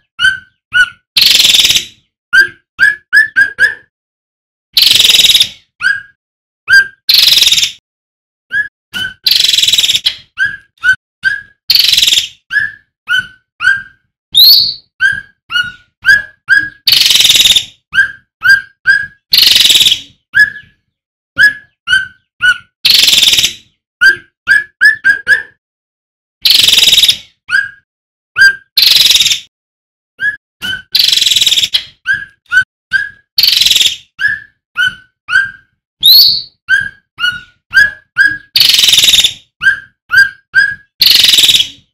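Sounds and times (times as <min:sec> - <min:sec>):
songbird whistled notes: 0:08.5 - 0:15.4, 0:30.2 - 0:41.8.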